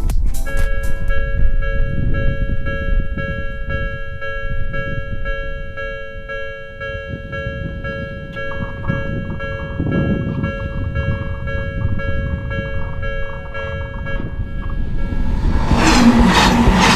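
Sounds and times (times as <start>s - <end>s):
level crossing alarm bell: 0.5s - 15.8s
steady low rumble: 7.2s - 16.9s.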